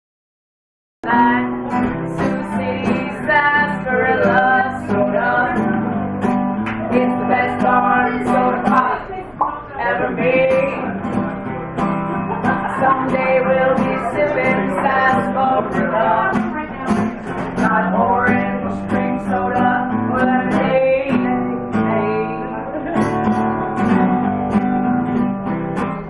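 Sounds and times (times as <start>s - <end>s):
person singing: 1.0s - 6.1s, 6.7s - 25.2s
acoustic guitar strumming: 1.0s - 26.0s.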